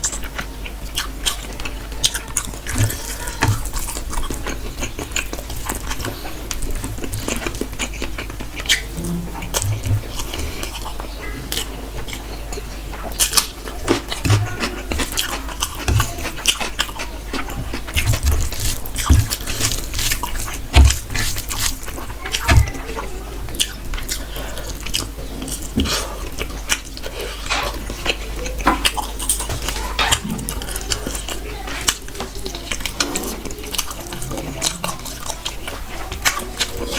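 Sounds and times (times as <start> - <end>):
steady low hum: 0.0 - 28.2
wet chewing smacks: 0.0 - 36.9.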